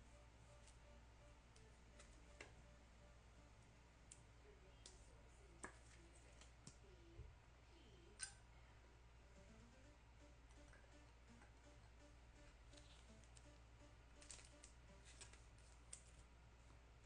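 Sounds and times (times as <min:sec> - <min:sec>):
trading cards handled: 0:14.2 - 0:16.3.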